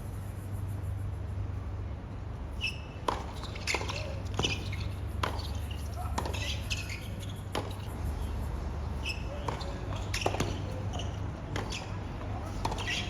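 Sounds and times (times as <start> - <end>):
sneakers squeaking on court: 2.5 - 7.9, 8.9 - 13.0
tennis balls struck: 3.0 - 7.9, 9.0 - 13.0.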